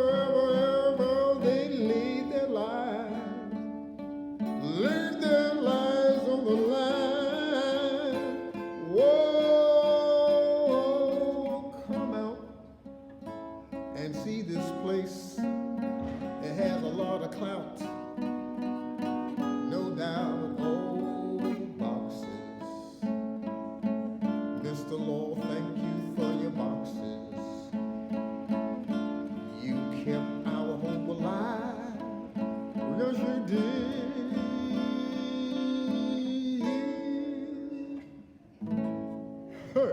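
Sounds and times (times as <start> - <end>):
wordless vocal line: 0.0 - 3.4, 4.6 - 12.6, 29.3 - 38.4, 39.5 - 39.9
strummed acoustic guitar: 0.0 - 39.9.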